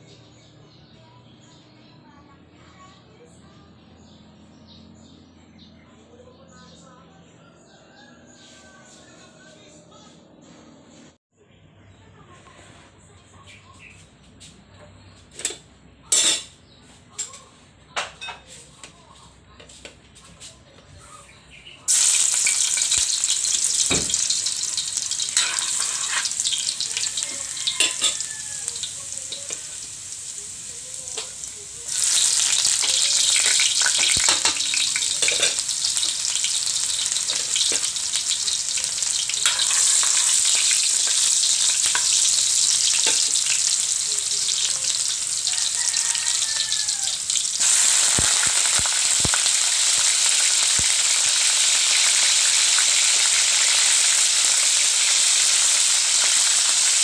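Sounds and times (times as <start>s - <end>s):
food sizzling in hot oil: 21.6s - 57.0s
utensil stirring in pan: 21.9s - 57.0s.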